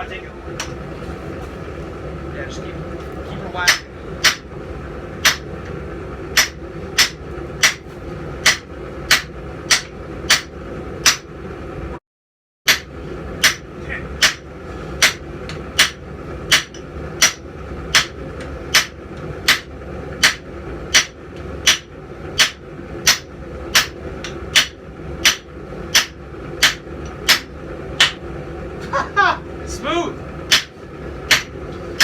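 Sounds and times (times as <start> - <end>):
steady low rumble: 0.0 - 12.0, 12.7 - 32.0
hammer striking steel on anvil: 3.6 - 4.5, 5.2 - 5.5, 6.3 - 11.3, 12.7 - 28.2, 30.5 - 31.6.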